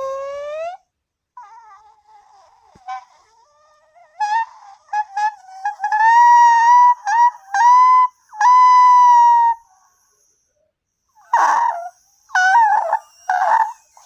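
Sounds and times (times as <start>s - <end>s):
dog howling: 0.0s - 0.8s, 11.3s - 13.8s.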